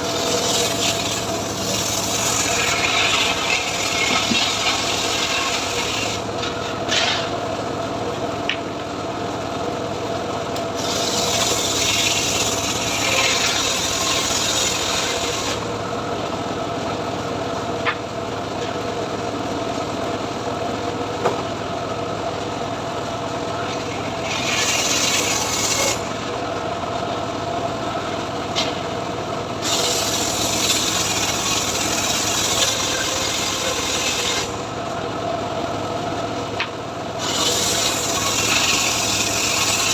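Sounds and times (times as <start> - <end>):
saw blade rasping through wood: 0.0 - 7.4, 10.8 - 15.7, 23.5 - 26.3, 29.6 - 34.7, 37.2 - 39.9
sawmill engine humming: 0.0 - 39.9.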